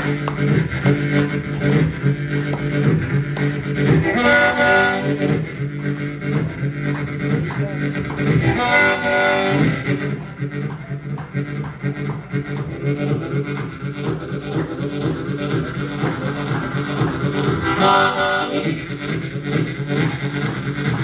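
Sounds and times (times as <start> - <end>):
harmonica wailing: 0.0 - 6.6, 8.3 - 10.2.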